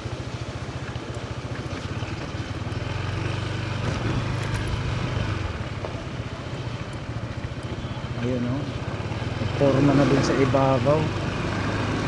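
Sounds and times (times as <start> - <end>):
vehicle engine running: 0.0 - 12.0.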